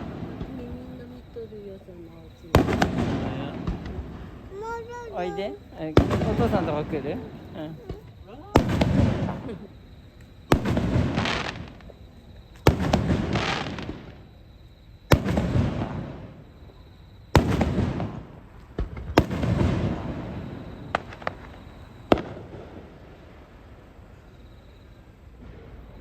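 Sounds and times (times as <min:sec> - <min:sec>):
sharp firework reports: 0:00.0 - 0:09.8, 0:10.5 - 0:11.9, 0:12.6 - 0:14.2, 0:15.1 - 0:16.5, 0:17.3 - 0:23.3
fireworks booming: 0:00.0 - 0:14.4, 0:15.1 - 0:24.3, 0:25.0 - 0:26.0.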